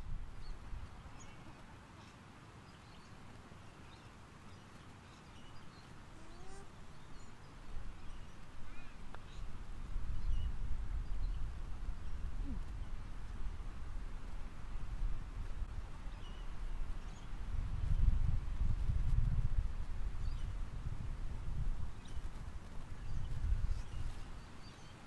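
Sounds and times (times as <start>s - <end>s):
wind rumble on microphone: 0.0s - 1.6s, 7.0s - 25.0s.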